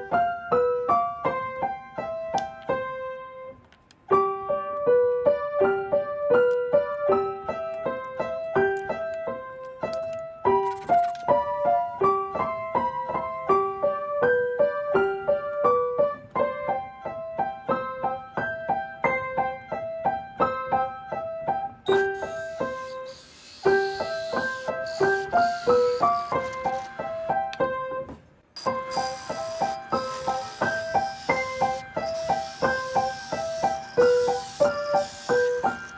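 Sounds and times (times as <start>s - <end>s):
hiss: 21.9s - 27.3s, 28.6s - 35.9s.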